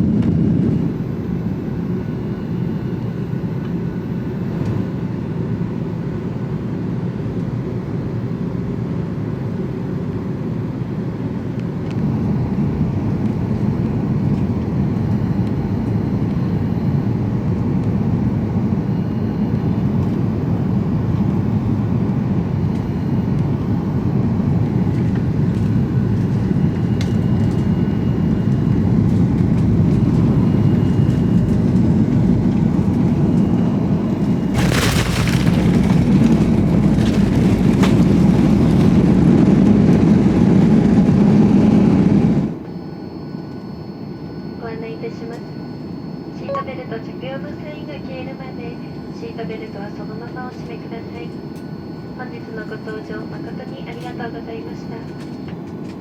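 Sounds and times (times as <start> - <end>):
airliner cabin engine rumble: 0.0 - 42.6.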